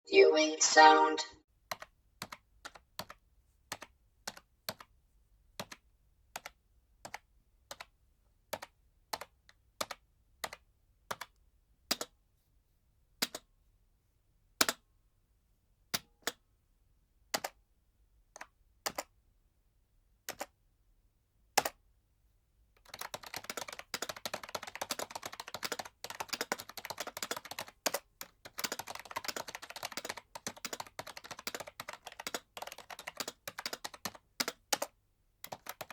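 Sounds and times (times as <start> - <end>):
computer keyboard typing: 1.7 - 4.9, 5.6 - 5.8, 6.4 - 7.9, 8.5 - 11.3, 17.4 - 17.6, 20.3 - 20.6, 22.8 - 35.9.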